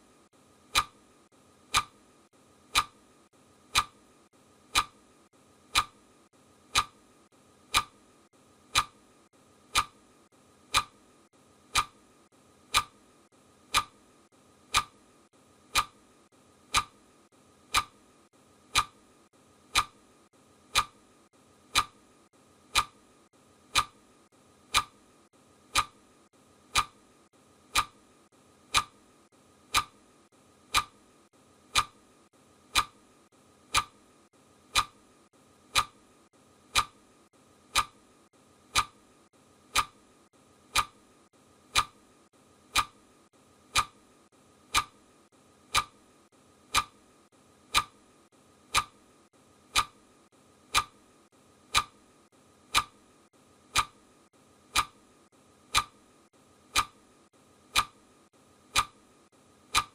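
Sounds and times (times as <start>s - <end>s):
clock ticking: 0.7s - 1.0s, 1.6s - 2.0s, 2.7s - 3.0s, 3.7s - 4.0s, 4.7s - 5.0s, 5.7s - 6.1s, 6.7s - 7.0s, 7.6s - 8.0s, 8.6s - 9.1s, 9.7s - 11.1s, 11.7s - 12.0s, 12.6s - 13.0s, 13.6s - 15.0s, 15.7s - 17.0s, 17.6s - 18.0s, 18.6s - 19.0s, 19.6s - 20.1s, 20.7s - 21.0s, 21.7s - 22.0s, 22.7s - 23.1s, 23.7s - 24.0s, 24.6s - 25.1s, 25.7s - 29.0s, 29.6s - 30.0s, 30.6s - 31.0s, 31.7s - 32.0s, 32.7s - 33.0s, 33.6s - 34.0s, 34.7s - 35.0s, 35.7s - 36.0s, 36.7s - 37.0s, 37.7s - 38.0s, 38.7s - 39.0s, 39.7s - 40.0s, 40.7s - 41.1s, 41.7s - 42.0s, 42.7s - 43.1s, 43.7s - 44.0s, 44.6s - 45.0s, 45.6s - 46.0s, 46.7s - 47.0s, 47.7s - 48.0s, 48.7s - 49.0s, 49.7s - 50.0s, 50.7s - 51.0s, 51.7s - 52.0s, 52.7s - 53.0s, 53.7s - 54.0s, 54.7s - 55.0s, 55.6s - 56.0s, 56.7s - 57.0s, 57.7s - 58.0s, 58.7s - 59.0s, 59.7s - 59.9s.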